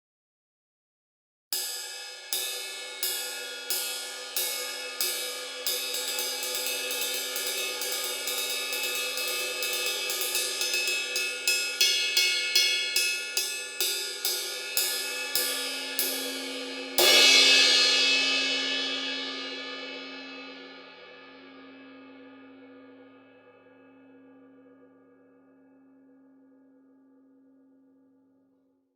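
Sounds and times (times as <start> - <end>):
ride cymbal strikes: 1.6 - 20.9.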